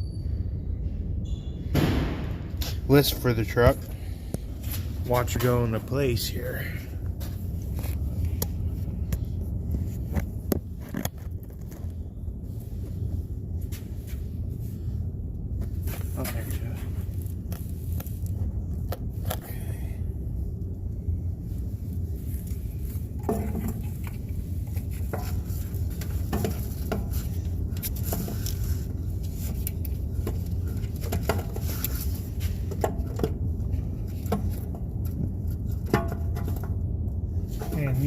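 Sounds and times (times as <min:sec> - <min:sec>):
steady low hum: 0:00.0 - 0:38.0.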